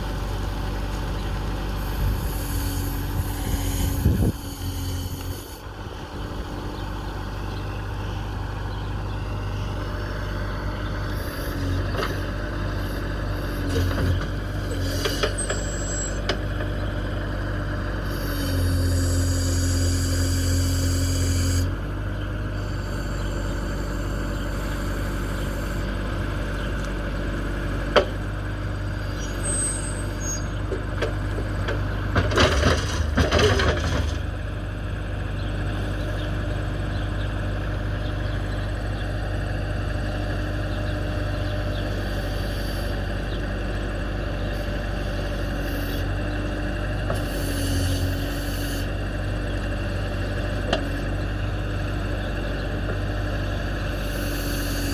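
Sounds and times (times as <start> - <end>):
diesel engine running: 0.0 - 54.9
scraping clatter: 30.7 - 34.4.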